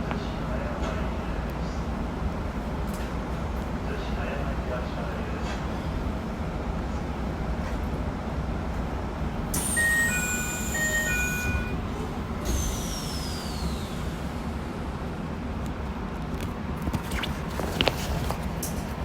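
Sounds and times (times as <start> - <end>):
electronic beeping tones: 9.6 - 11.8.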